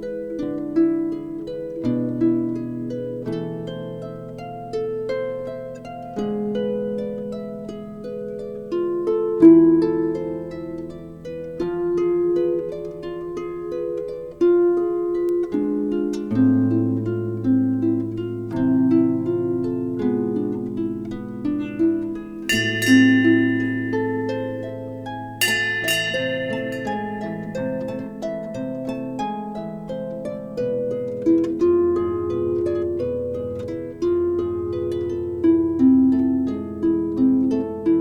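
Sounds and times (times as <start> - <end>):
harp plucked notes: 0.0 - 38.0
held low tones: 20.8 - 29.0.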